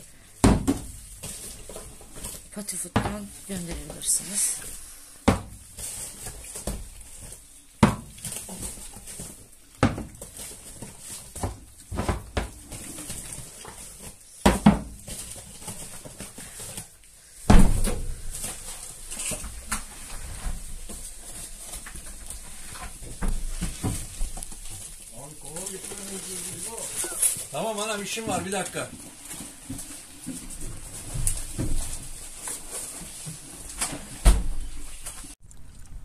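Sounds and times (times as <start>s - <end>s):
dogs feeding: 21.0s - 33.8s.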